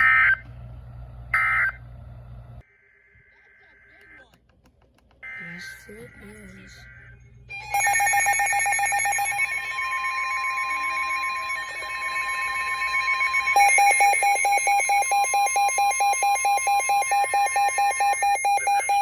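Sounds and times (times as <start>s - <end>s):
rapid alert beeping: 5.2s - 19.0s
steady high alarm tone: 5.2s - 19.0s.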